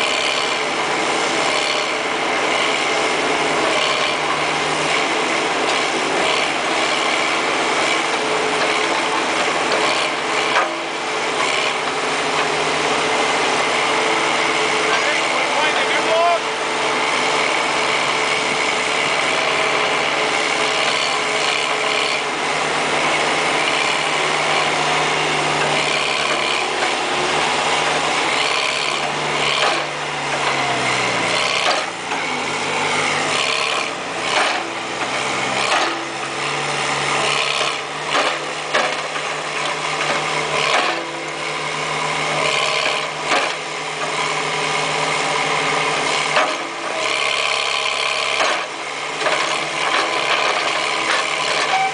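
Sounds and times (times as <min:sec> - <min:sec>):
backhoe engine running: 0:00.0 - 0:51.9
knocks and clanks: 0:31.4 - 0:32.3, 0:33.7 - 0:36.1, 0:37.7 - 0:41.1, 0:42.8 - 0:44.2, 0:46.1 - 0:46.7, 0:48.3 - 0:51.9.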